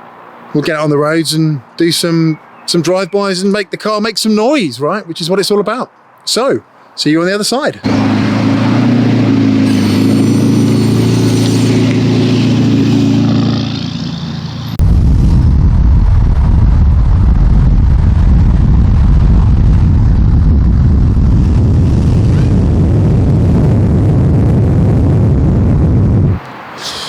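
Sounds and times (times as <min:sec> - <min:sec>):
sports car engine rumble: 0:07.9 - 0:26.4.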